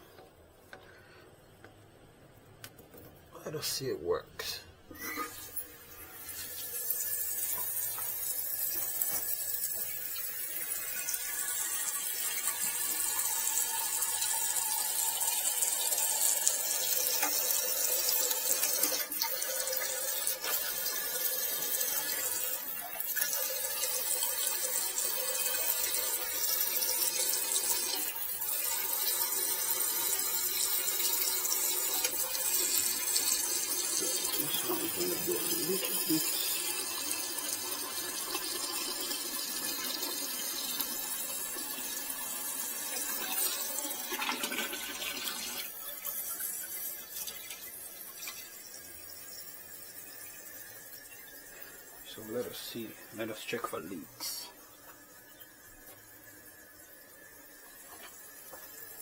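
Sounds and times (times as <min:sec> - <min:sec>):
toilet tank filling with water: 0:04.5 - 0:59.0.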